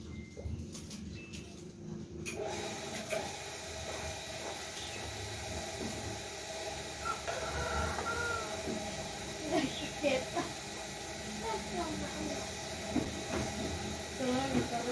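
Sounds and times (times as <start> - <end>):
food sizzling in hot oil: 7.0 - 14.9.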